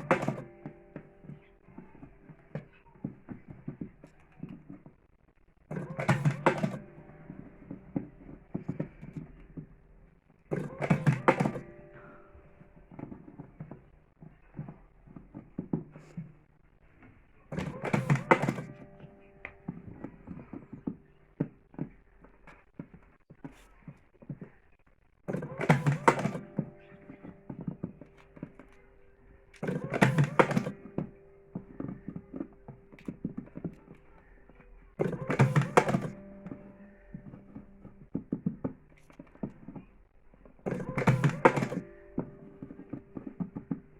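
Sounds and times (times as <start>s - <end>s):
handling clicks and knocks: 0.0s - 5.0s, 5.7s - 9.8s, 10.5s - 12.2s, 17.5s - 24.6s, 25.3s - 28.9s, 29.5s - 39.9s, 40.6s - 43.9s.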